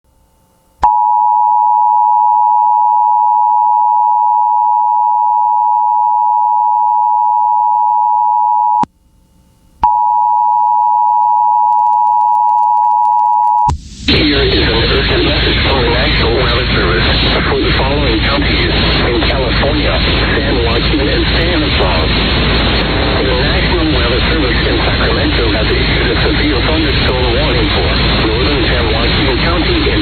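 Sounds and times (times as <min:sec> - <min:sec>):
two-tone alert alarm: 0:00.8 - 0:08.8, 0:09.8 - 0:13.7.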